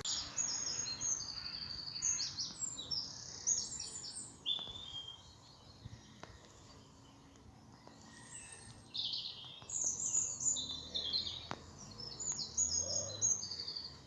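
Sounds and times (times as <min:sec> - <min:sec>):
songbird chirping: 0:00.0 - 0:14.0.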